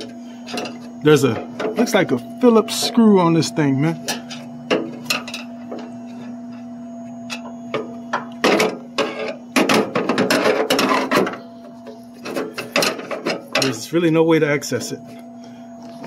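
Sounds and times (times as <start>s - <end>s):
steady hum: 0.0s - 16.0s
tool scraping metal parts: 8.4s - 11.5s.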